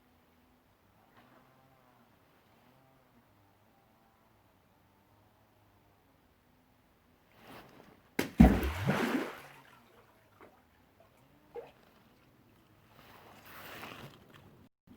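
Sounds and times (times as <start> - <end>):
deep splash: 8.2 - 10.6
stone smacking water: 8.2 - 10.6
small water plops: 8.2 - 12.3
soft wash of water: 8.2 - 13.5.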